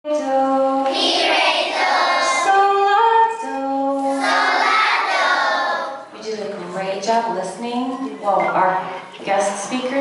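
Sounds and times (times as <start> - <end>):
children singing together: 0.5 - 6.1.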